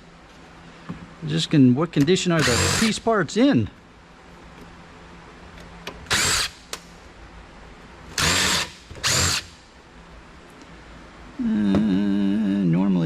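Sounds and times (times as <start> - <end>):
power screwdriver whirring: 2.4 - 2.9, 6.1 - 6.6, 8.2 - 9.5.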